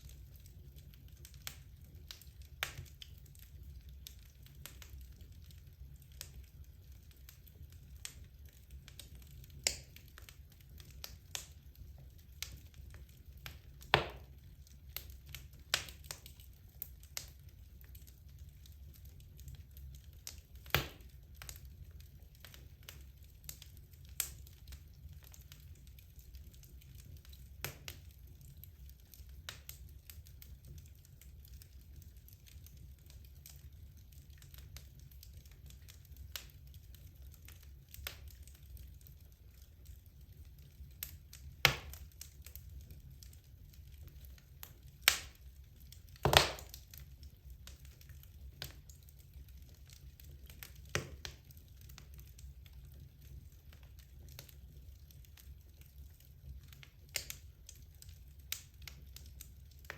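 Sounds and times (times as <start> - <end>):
logs crackling in a fireplace: 0.0 - 59.9
low fire rumble: 0.0 - 59.9
fire sharp pops: 9.6 - 10.0, 12.4 - 14.4, 20.3 - 21.6, 41.6 - 42.6, 45.0 - 45.4, 46.1 - 47.1, 50.5 - 52.0.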